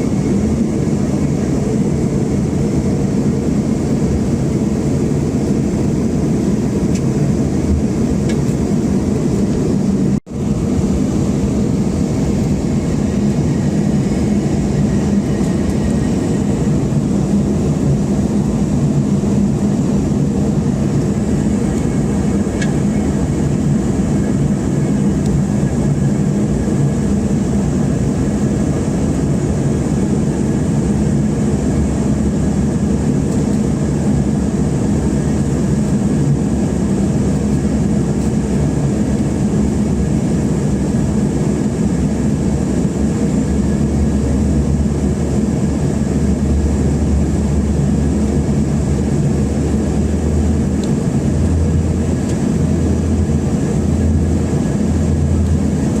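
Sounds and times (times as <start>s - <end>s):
airliner cabin noise: 0.0s - 56.0s
deep rumble: 42.1s - 56.0s
low hum: 42.2s - 56.0s.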